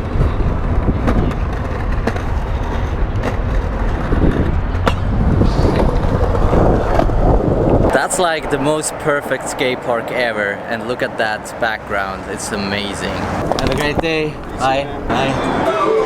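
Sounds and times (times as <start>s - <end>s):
skateboard clacks: 0.0s - 7.8s
skateboard wheels rolling on concrete: 0.0s - 16.0s.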